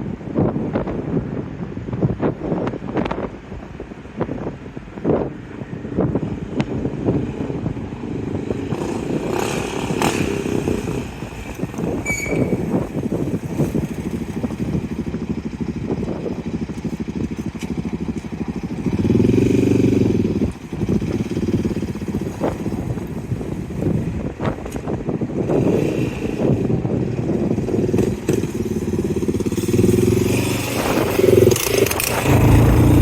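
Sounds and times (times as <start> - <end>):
quad bike engine running: 8.2 - 33.0
engine revving: 27.7 - 33.0.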